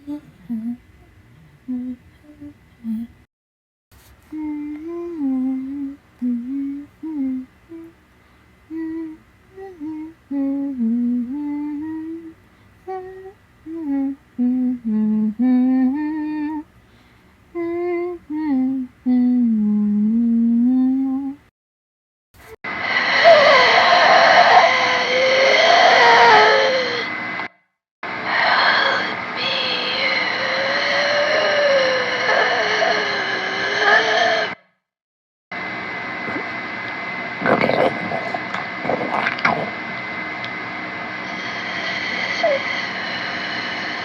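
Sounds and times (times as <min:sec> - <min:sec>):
person humming a tune: 0:00.0 - 0:03.2, 0:04.3 - 0:08.0, 0:08.7 - 0:16.7, 0:17.5 - 0:21.5.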